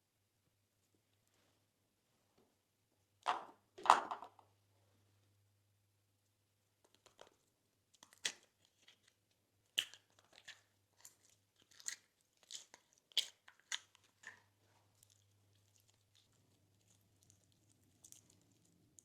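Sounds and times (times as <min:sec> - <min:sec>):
crunchy slime crackling: 0:08.0 - 0:19.0.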